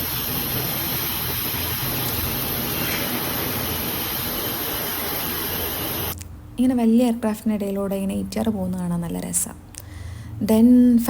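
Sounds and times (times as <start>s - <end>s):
aircraft engines roaring: 0.0s - 6.2s
high engine whine: 0.0s - 6.2s.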